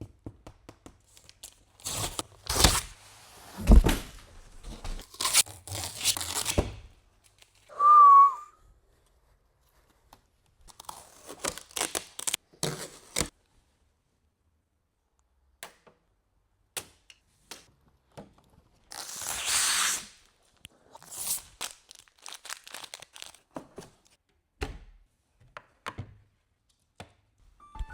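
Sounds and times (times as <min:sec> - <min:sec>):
loud packaging tear: 0:01.8 - 0:02.9, 0:05.0 - 0:06.7, 0:10.7 - 0:13.3, 0:18.9 - 0:20.2, 0:21.0 - 0:23.4.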